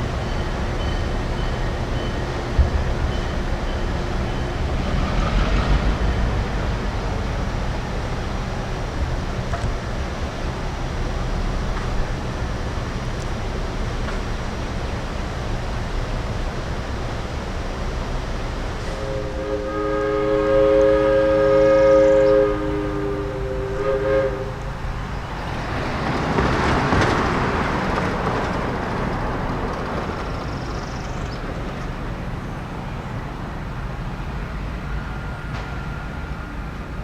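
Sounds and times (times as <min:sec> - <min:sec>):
train passing: 0:00.0 - 0:37.0
locomotive air horn: 0:18.8 - 0:24.7.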